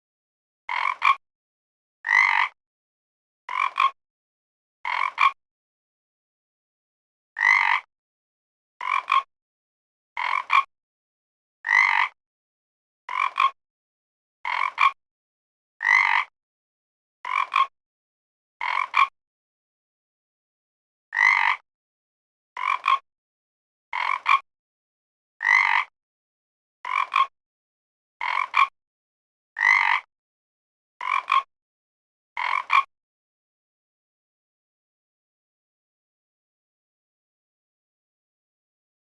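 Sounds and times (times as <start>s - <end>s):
frog croaking: 0.7s - 1.2s, 2.1s - 2.6s, 3.5s - 4.0s, 4.9s - 5.4s, 7.4s - 7.9s, 8.8s - 9.3s, 10.2s - 10.7s, 11.7s - 12.2s, 13.1s - 13.6s, 14.5s - 15.0s, 15.8s - 16.3s, 17.2s - 17.7s, 18.6s - 19.1s, 21.2s - 21.6s, 22.6s - 23.0s, 24.0s - 24.4s, 25.4s - 25.9s, 26.8s - 27.3s, 28.2s - 28.7s, 29.6s - 30.1s, 31.0s - 31.5s, 32.4s - 32.9s.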